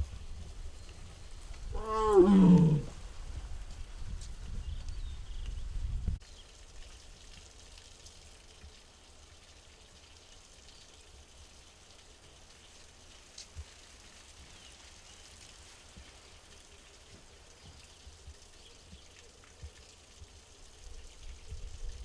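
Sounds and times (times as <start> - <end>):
tiger call: 1.8 - 2.9.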